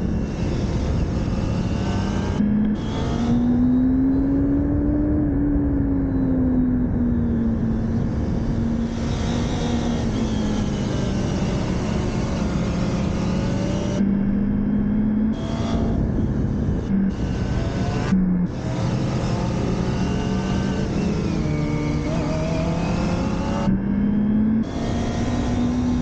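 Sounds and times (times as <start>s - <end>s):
wind noise: 0.0s - 26.0s
motorcycle engine running: 7.2s - 26.0s.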